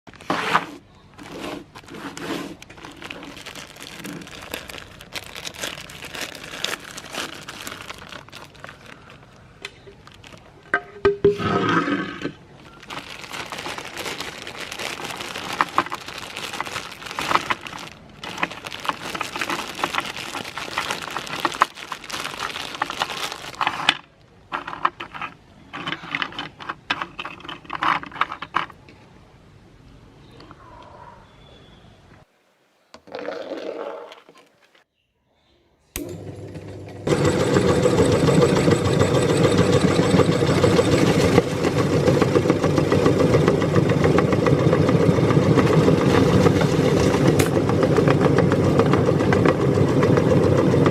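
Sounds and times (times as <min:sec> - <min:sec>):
meat grinder crunching: 0:02.6 - 0:10.4, 0:12.7 - 0:23.6, 0:36.0 - 0:50.9.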